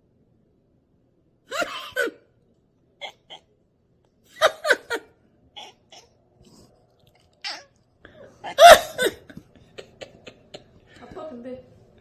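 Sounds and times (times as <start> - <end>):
cat coughing: 1.5 - 2.3.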